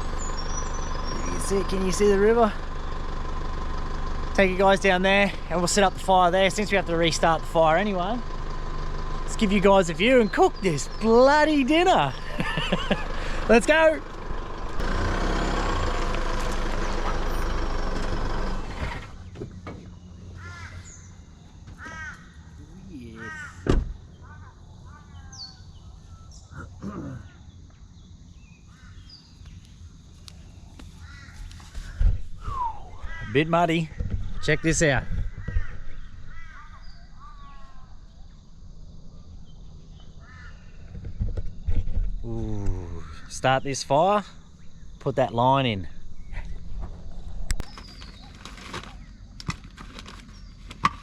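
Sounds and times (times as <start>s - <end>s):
vehicle engine and tyres: 0.0s - 24.1s, 26.9s - 36.6s, 38.2s - 51.0s
crow cawing: 20.4s - 21.1s, 21.8s - 25.4s, 28.7s - 29.2s, 31.0s - 32.1s, 33.0s - 33.4s, 35.3s - 37.8s, 40.2s - 40.8s, 43.0s - 43.4s
steady low rumble: 44.2s - 48.4s.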